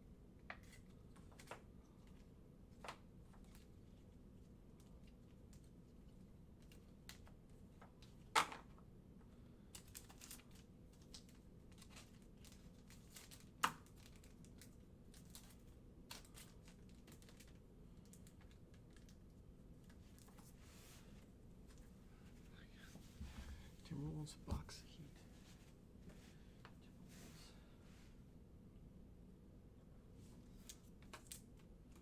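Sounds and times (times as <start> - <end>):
wrappers crinkling: 9.7 - 19.2.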